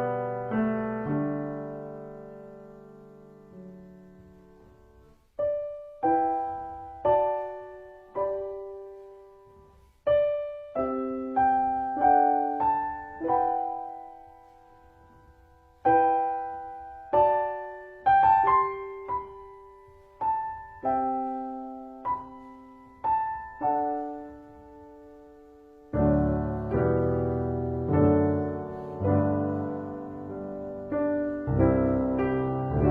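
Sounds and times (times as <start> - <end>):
slow solo piano: 0.0 - 32.9.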